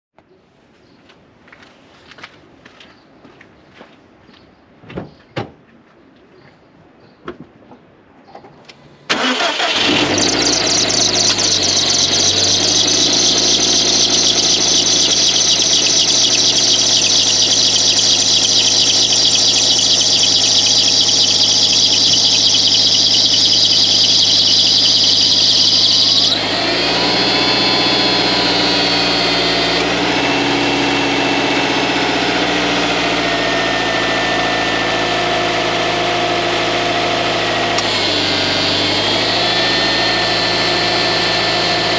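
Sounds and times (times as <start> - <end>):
car engine cranking and idling: 9.0 - 41.9
high-pitched belt squeal: 9.1 - 33.8, 37.8 - 41.9.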